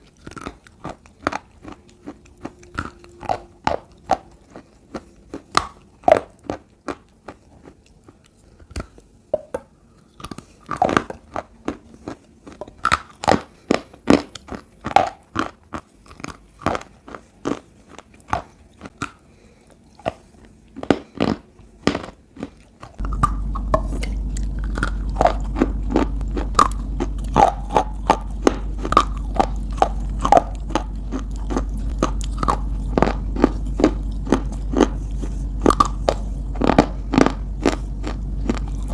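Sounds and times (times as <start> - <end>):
steady low hum: 0.0 - 7.2, 22.9 - 38.9
biting and chewing clay crunches: 0.0 - 9.2, 10.0 - 38.9.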